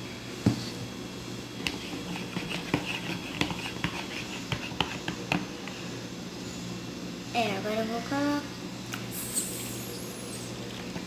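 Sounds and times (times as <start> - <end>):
spoon stirring thick mixture: 1.6 - 5.9.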